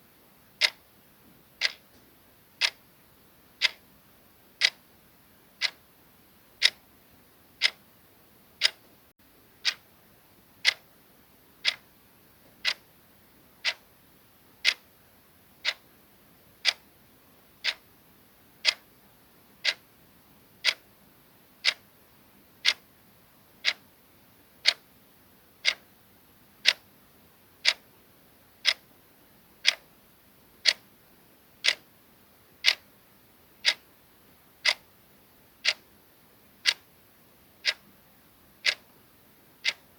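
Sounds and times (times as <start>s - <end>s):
clock ticking: 0.6s - 0.8s, 1.6s - 2.0s, 2.6s - 2.8s, 3.6s - 3.8s, 4.6s - 4.8s, 5.6s - 5.8s, 6.6s - 6.8s, 7.6s - 7.8s, 8.6s - 8.9s, 9.6s - 9.8s, 10.6s - 10.8s, 11.6s - 11.8s, 12.6s - 12.9s, 13.6s - 13.8s, 14.6s - 14.8s, 15.6s - 15.8s, 16.6s - 16.8s, 17.6s - 17.8s, 18.6s - 18.9s, 19.6s - 19.8s, 20.6s - 20.8s, 21.6s - 21.8s, 22.6s - 22.8s, 23.6s - 23.8s, 24.6s - 24.8s, 25.6s - 25.8s, 26.6s - 26.8s, 27.6s - 27.8s, 28.6s - 28.8s, 29.6s - 29.9s, 30.6s - 30.8s, 31.6s - 31.8s, 32.6s - 32.8s, 33.6s - 33.8s, 34.6s - 34.9s, 35.6s - 35.8s, 36.6s - 36.9s, 37.6s - 37.9s, 38.6s - 38.9s, 39.6s - 39.9s.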